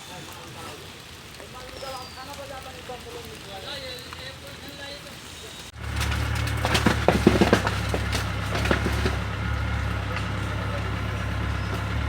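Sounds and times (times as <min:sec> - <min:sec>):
bulldozer diesel engine running: 0:05.5 - 0:12.0
bottles being crushed: 0:05.8 - 0:09.2.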